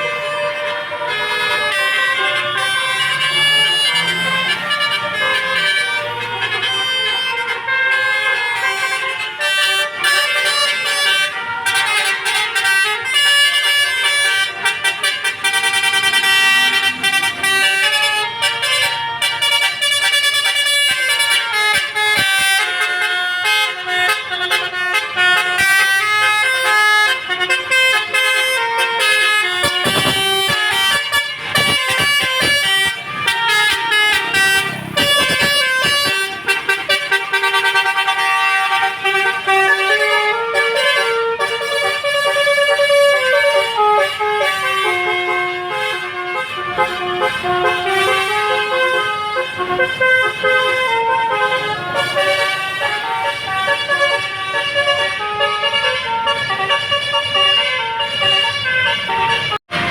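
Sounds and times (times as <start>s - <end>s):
bus musical horn playing a tune: 0.0s - 59.9s
rough noise: 29.5s - 36.8s.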